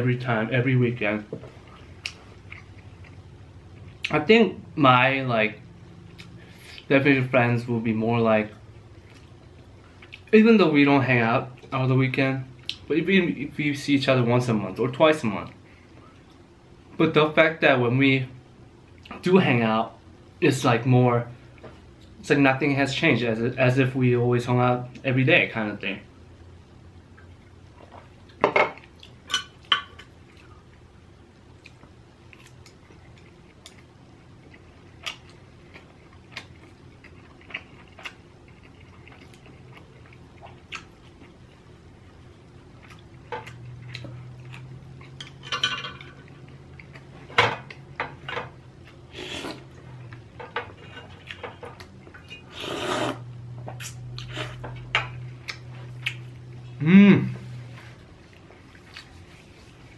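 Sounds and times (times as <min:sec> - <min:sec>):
scraping or slurping: 0:49.1 - 0:49.7, 0:52.5 - 0:54.6.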